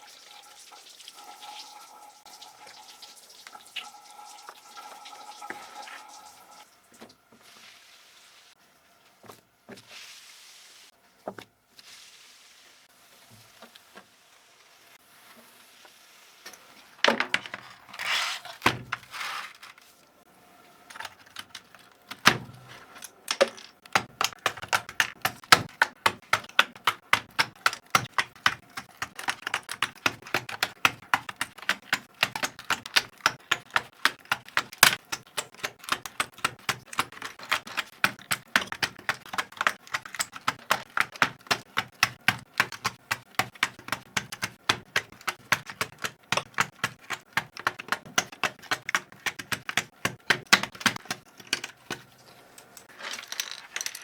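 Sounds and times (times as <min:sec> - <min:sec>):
handling scrapes: 0:17.4 - 0:20.1
computer keyboard keys clicking: 0:20.9 - 0:52.1.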